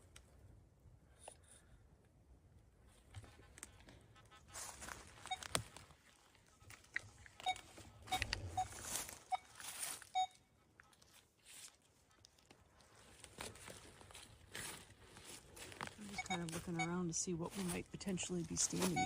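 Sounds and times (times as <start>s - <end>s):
metal detector beeps: 5.2s - 5.6s, 7.4s - 10.6s, 16.0s - 19.0s
crunching in dry leaves: 8.3s - 10.2s, 11.0s - 19.0s.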